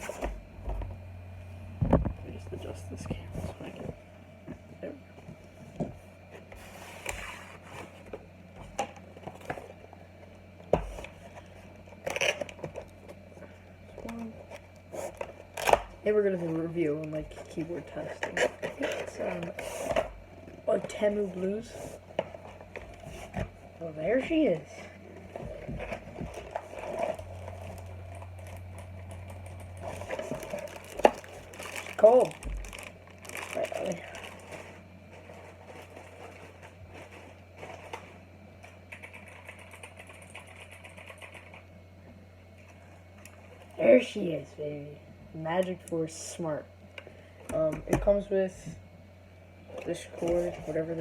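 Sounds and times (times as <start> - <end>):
steady low hum: 0.0 - 51.0
packaging rustling: 25.4 - 38.1.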